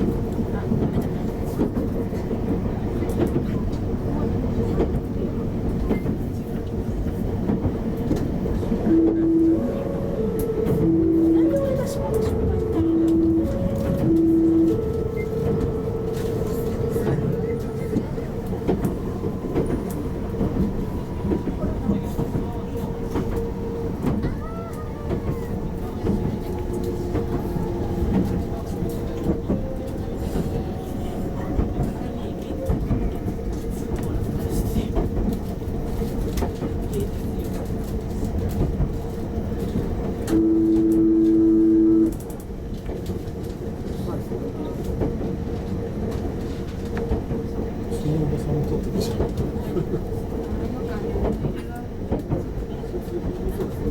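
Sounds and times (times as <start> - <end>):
train running hum: 0.0 - 53.9
train horn: 8.8 - 32.9, 40.3 - 42.4.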